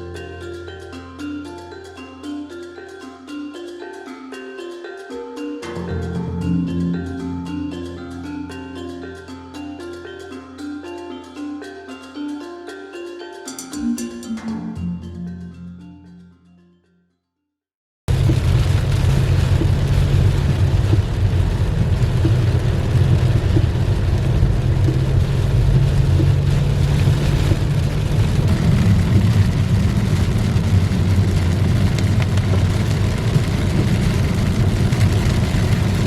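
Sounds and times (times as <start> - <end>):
rain hissing against car: 18.1 - 36.0
road and engine noise: 18.1 - 36.0.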